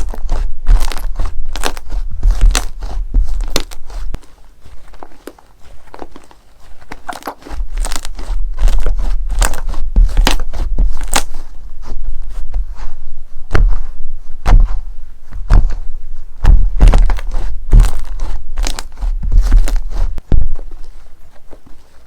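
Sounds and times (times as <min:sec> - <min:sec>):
slime crackling and clicking: 0:00.0 - 0:02.8, 0:06.9 - 0:11.4, 0:16.8 - 0:19.8
deep close thumps: 0:00.0 - 0:04.2, 0:07.6 - 0:20.9.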